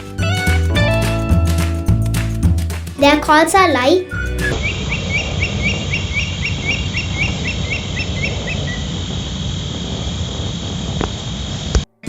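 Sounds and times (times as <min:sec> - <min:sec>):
bird whistled calls: 0:04.0 - 0:08.9.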